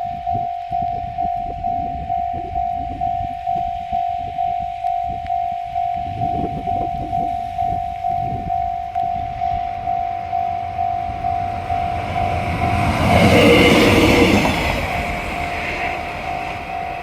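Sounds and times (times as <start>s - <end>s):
level-crossing warning bell ringing: 0.0s - 17.0s
diesel locomotive passing: 6.0s - 17.0s.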